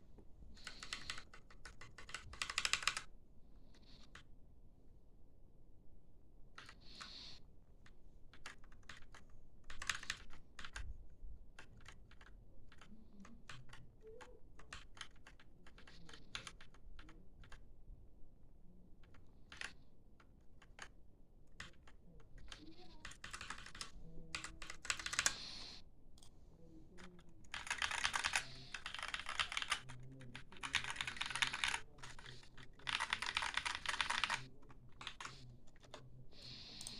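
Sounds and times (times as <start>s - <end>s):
mechanical keyboard typing: 0.6s - 3.1s, 8.3s - 10.9s, 11.6s - 17.6s, 19.0s - 19.8s, 21.6s - 25.4s, 27.0s - 36.0s.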